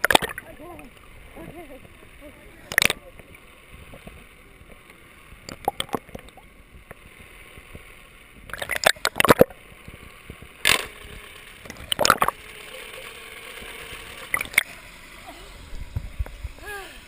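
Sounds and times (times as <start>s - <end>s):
short sharp splashes: 2.7s - 3.0s, 8.5s - 9.6s, 14.3s - 14.7s
water sloshing at sea surface: 8.4s - 9.6s.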